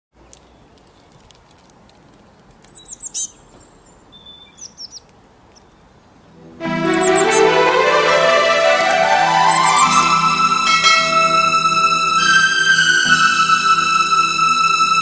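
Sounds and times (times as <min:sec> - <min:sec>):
bird chirping: 0:02.7 - 0:05.9, 0:09.5 - 0:15.0
loud music: 0:06.4 - 0:15.0
whistled bird note: 0:09.0 - 0:15.0.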